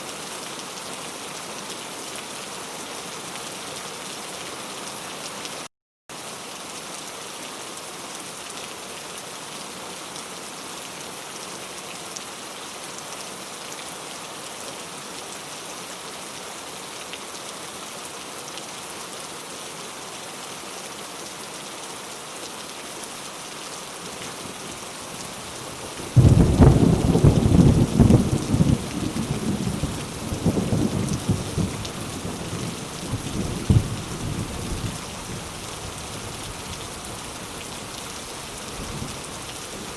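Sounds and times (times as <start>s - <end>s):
rain falling: 0.0s - 39.9s
thunder clap and rumble: 26.1s - 32.7s.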